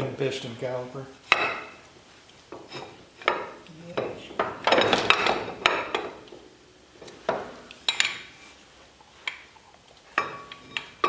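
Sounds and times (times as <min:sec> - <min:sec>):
metal parts clinking and knocking: 0:02.7 - 0:06.4, 0:07.3 - 0:08.3.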